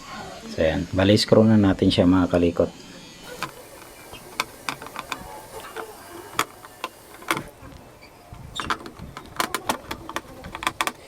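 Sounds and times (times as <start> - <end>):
screwdriver clicks and creaks: 3.3 - 11.0.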